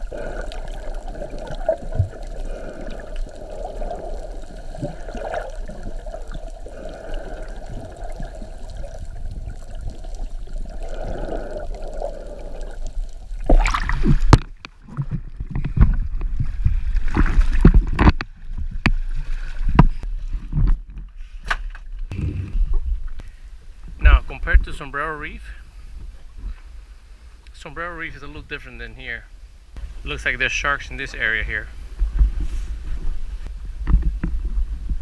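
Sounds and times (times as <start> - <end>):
water splashing: 0.0 - 18.1
water sloshing and gurgling: 0.0 - 21.0.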